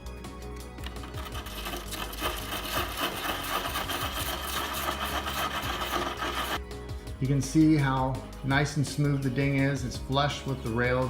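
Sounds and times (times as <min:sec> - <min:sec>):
sanding pad scratching: 0:00.8 - 0:06.6.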